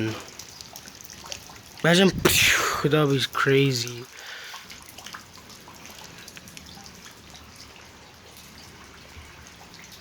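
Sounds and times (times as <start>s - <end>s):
rain falling and dripping: 0.0s - 10.0s.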